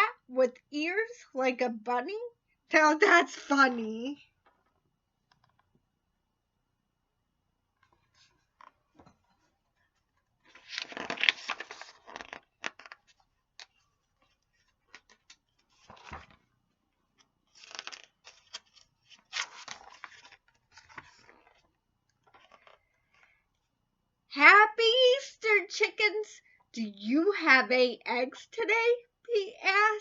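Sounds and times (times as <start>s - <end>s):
paper rustling and crinkling: 7.8s - 16.5s, 17.2s - 23.3s.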